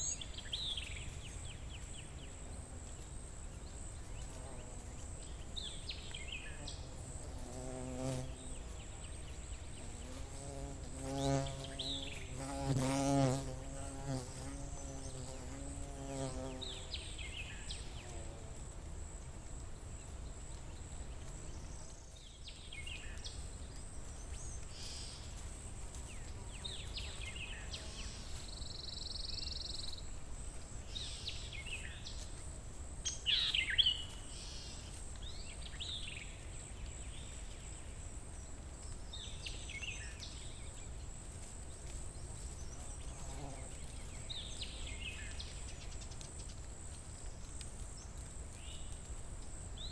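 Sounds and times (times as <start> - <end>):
fly buzzing: 9.8 - 16.9.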